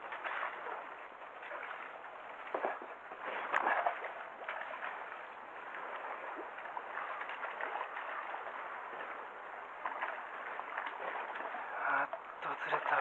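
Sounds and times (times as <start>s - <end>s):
water splashing and gurgling: 0.0s - 13.0s.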